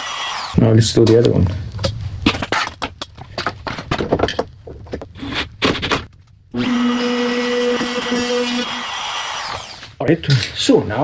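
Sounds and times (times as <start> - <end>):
wooden knocks and clatter: 1.4 - 6.4
electric router running: 6.6 - 9.8.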